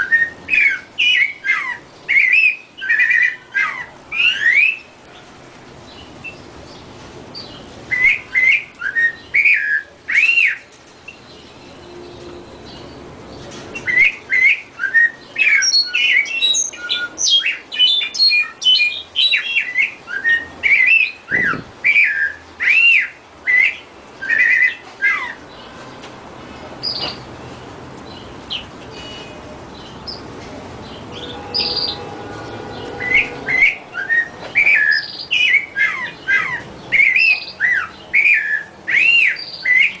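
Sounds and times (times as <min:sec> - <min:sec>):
bird chirping and whistling: 0:00.0 - 0:04.9, 0:07.9 - 0:11.2, 0:13.8 - 0:25.4, 0:31.1 - 0:40.0.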